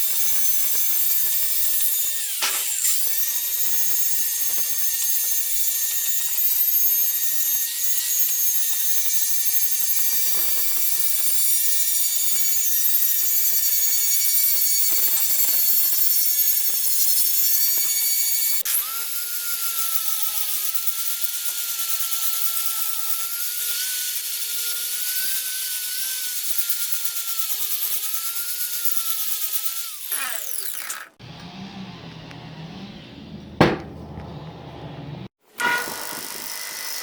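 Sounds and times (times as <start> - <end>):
angle grinder grinding steel: 0.0 - 6.4, 17.6 - 36.7.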